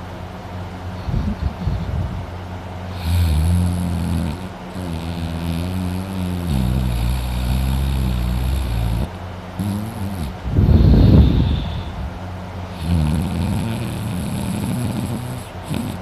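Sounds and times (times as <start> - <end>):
man snoring loudly: 2.9 - 11.9, 12.7 - 16.0.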